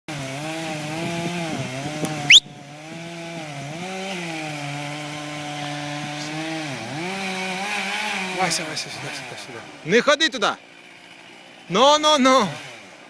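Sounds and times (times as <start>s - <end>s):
chainsaw cutting wood: 0.1s - 13.0s
rising whistle-like squeal: 2.3s - 2.5s.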